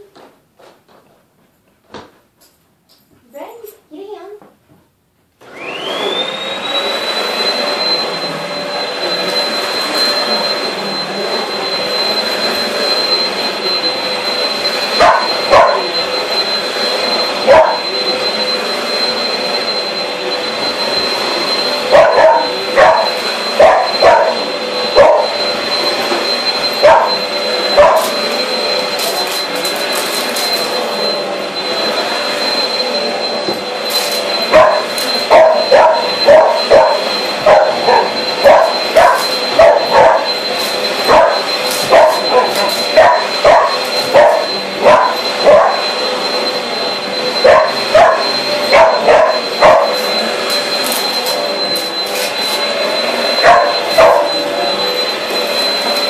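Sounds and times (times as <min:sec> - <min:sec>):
vacuum cleaner motor whining: 0:05.4 - 0:56.0
dog barking: 0:15.0 - 0:15.9, 0:17.5 - 0:17.8, 0:21.9 - 0:24.4, 0:25.0 - 0:25.4, 0:26.8 - 0:27.2, 0:27.8 - 0:28.1, 0:34.5 - 0:40.3, 0:41.1 - 0:45.8, 0:47.4 - 0:50.0, 0:53.4 - 0:54.3.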